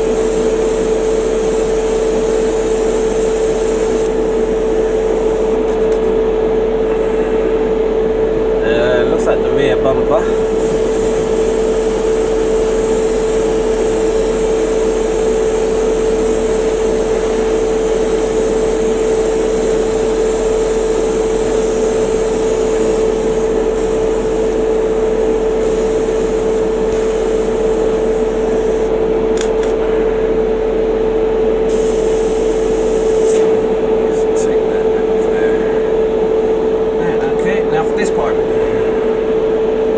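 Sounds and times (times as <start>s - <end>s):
airbrush spray hiss: 0.0s - 6.1s, 10.2s - 29.7s, 31.7s - 34.4s
compressor humming: 0.0s - 39.9s.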